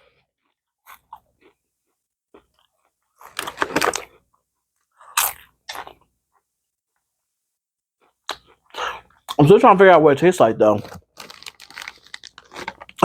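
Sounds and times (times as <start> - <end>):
potato chips crunching: 10.8 - 13.0.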